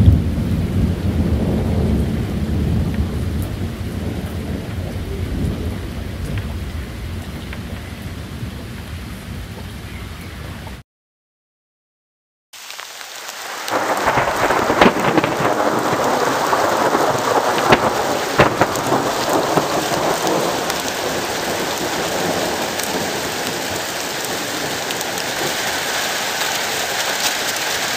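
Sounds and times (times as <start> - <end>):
thunder cracks: 0.0 - 9.4, 13.5 - 25.9
heavy rain hiss: 12.6 - 27.9.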